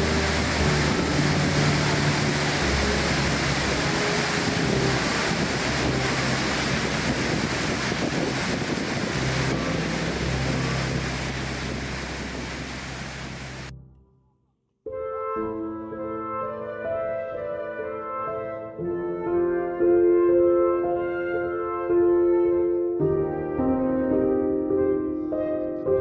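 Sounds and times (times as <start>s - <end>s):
waterfall rushing: 0.0s - 13.7s
low held music chords: 0.0s - 14.0s.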